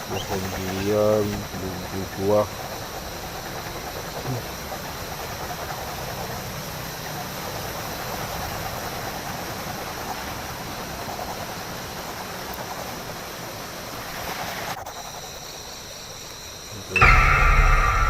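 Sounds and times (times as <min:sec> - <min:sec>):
faint high-pitched tones: 0:16.9 - 0:18.0.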